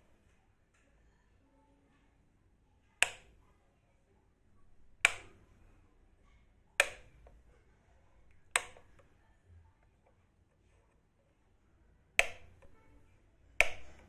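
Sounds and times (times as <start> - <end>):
switch clicking: 3.0 - 3.4, 4.6 - 5.4, 6.8 - 7.4, 8.2 - 9.1, 12.2 - 12.8, 13.6 - 14.0.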